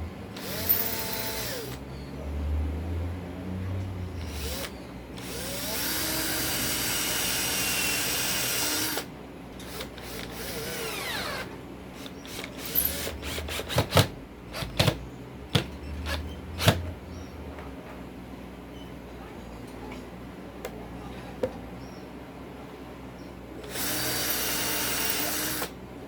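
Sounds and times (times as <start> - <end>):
electric drill running: 0.4 - 1.8, 4.2 - 14.9, 23.6 - 25.8.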